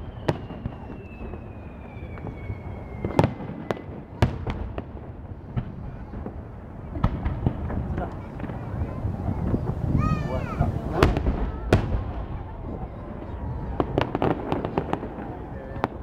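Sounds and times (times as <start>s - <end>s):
firework whistle falling in pitch: 0.0s - 3.9s
fireworks bangs: 0.0s - 16.0s.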